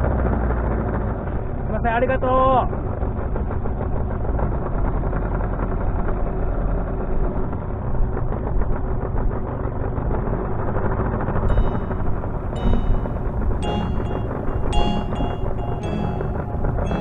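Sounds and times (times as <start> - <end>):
music: 11.4 - 17.0.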